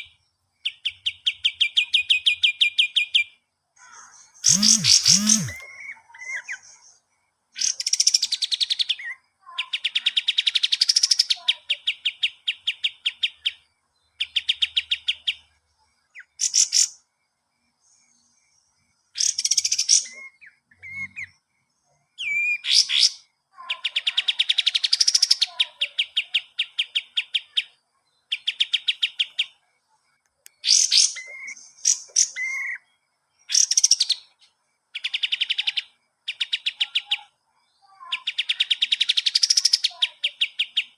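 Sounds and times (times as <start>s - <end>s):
sharp high bird chirps: 0.0s - 17.1s, 17.8s - 29.6s, 30.4s - 40.9s
songbird rattling trills: 4.2s - 6.9s.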